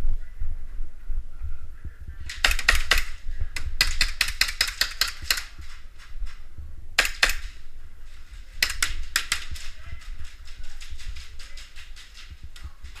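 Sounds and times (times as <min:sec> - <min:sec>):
airsoft gunfire: 0:02.3 - 0:05.8, 0:07.0 - 0:07.7, 0:08.5 - 0:13.0.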